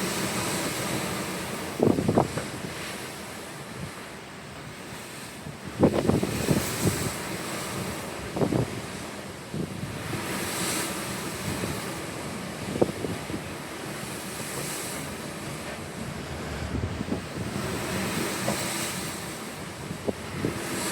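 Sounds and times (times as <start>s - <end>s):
ocean waves washing: 0.0s - 20.9s
wind on microphone: 1.7s - 2.8s, 5.5s - 10.1s, 14.5s - 20.9s.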